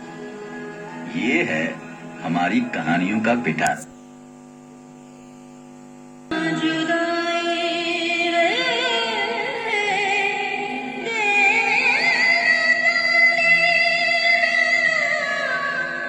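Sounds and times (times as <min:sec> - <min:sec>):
song with wavering sung notes: 0:00.0 - 0:03.7.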